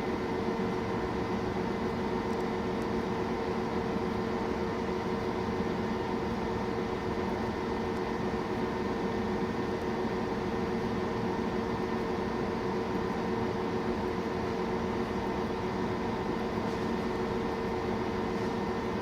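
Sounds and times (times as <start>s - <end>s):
machine hum and fan noise: 0.0s - 19.0s.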